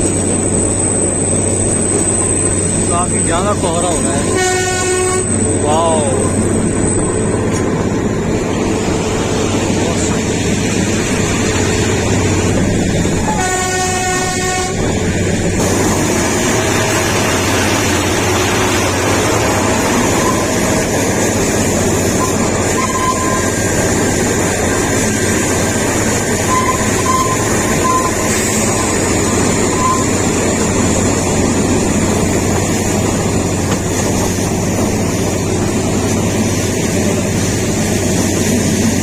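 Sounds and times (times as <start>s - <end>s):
train rumbling and rattling: 0.0s - 39.0s
train horn: 4.2s - 5.4s, 13.3s - 14.9s, 22.2s - 23.4s, 26.5s - 28.1s.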